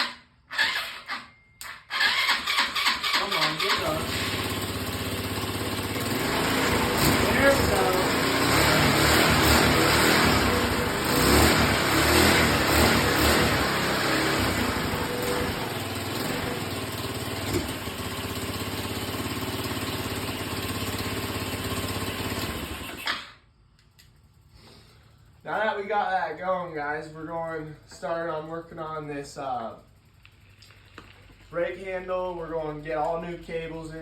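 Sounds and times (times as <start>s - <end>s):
scooter engine revving and idling: 2.0s - 23.3s.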